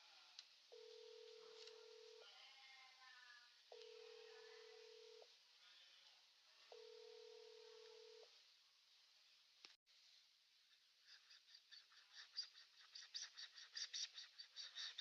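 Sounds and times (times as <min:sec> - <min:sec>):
faint wavering voices: 0:00.0 - 0:08.3
telephone ringing tone: 0:00.8 - 0:02.2, 0:03.7 - 0:05.3, 0:06.7 - 0:08.3.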